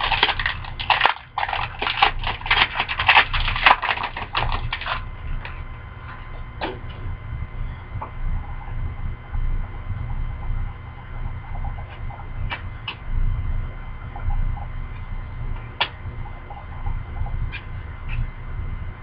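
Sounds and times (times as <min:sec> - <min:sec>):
wrapper tearing and crinkling: 0:00.0 - 0:05.1.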